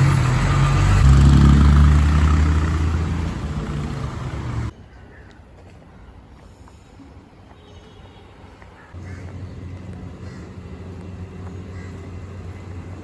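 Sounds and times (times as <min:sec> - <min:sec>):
steady low engine hum: 0:00.0 - 0:04.7, 0:09.0 - 0:13.0.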